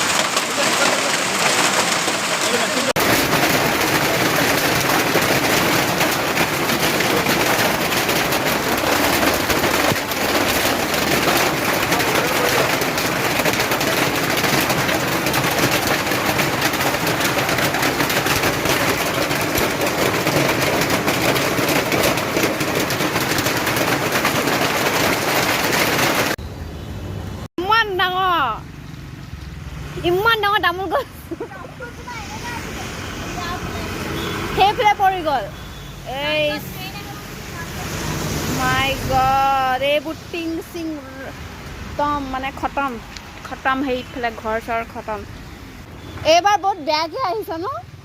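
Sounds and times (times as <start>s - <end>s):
heavy hail clattering: 0.0s - 26.4s.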